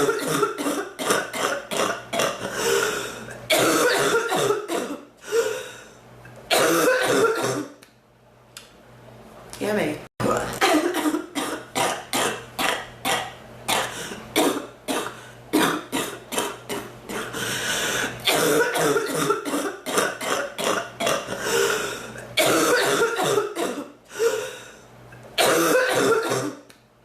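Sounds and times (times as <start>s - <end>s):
woman coughing: 0.0s - 2.9s, 3.5s - 5.6s, 6.5s - 7.8s, 10.6s - 17.4s, 18.2s - 21.4s, 22.4s - 24.4s, 25.4s - 26.7s.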